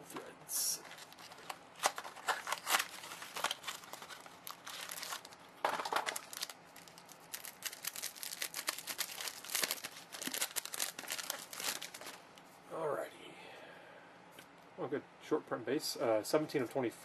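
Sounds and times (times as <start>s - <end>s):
card packaging crinkling: 0.7s - 12.2s.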